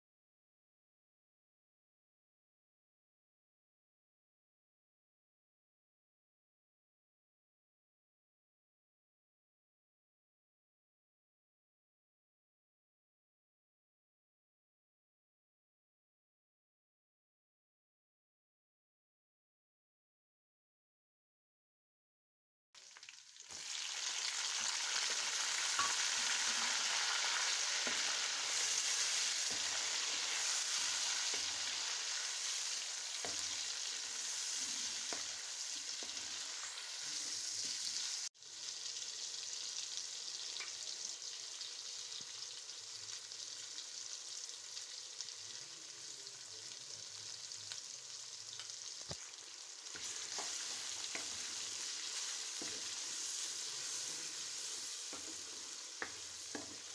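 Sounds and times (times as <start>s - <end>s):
chicken sizzling in hot oil: 22.8s - 56.9s.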